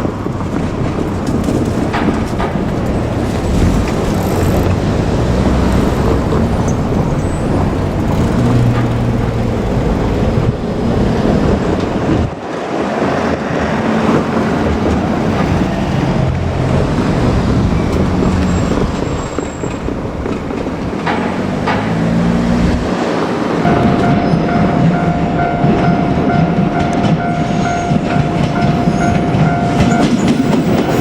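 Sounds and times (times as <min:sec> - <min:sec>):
low train motor hum: 0:00.0 - 0:31.0
wheels rumbling on rail: 0:00.0 - 0:31.0.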